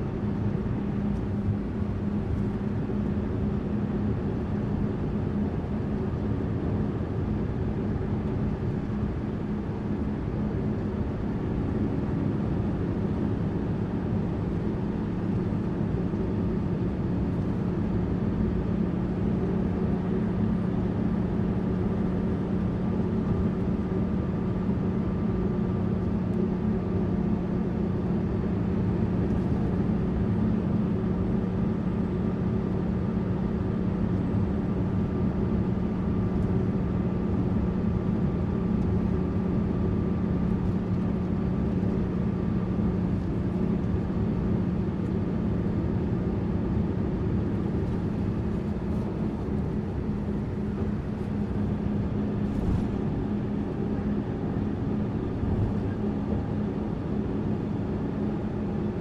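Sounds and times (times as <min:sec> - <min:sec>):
bus engine drone: 0:00.0 - 0:59.0
road noise: 0:47.2 - 0:55.8.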